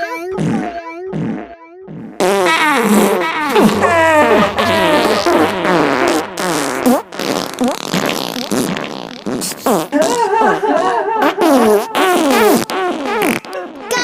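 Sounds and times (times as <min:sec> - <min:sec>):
cartoon fart sound effects: 0:02.2 - 0:10.3, 0:11.2 - 0:14.0.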